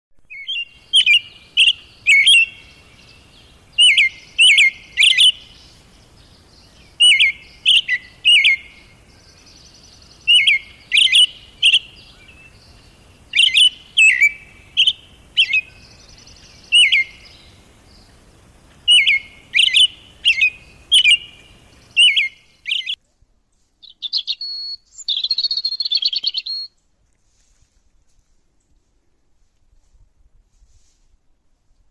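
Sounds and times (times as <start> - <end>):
songbird singing: 0.2 - 27.0
buzzy bird trill: 0.3 - 5.8, 6.8 - 17.6, 18.8 - 23.0, 23.8 - 26.7.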